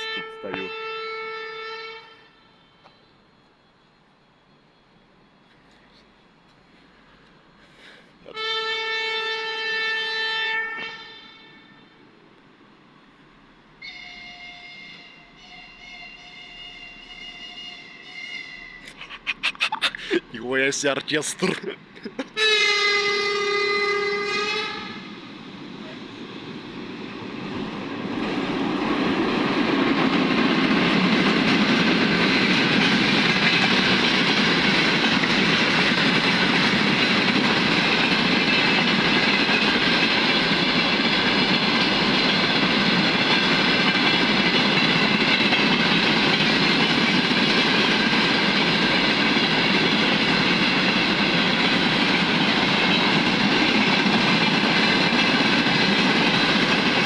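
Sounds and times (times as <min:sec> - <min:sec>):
train wheels clattering over rail joints: 0:28.8 - 0:57.0.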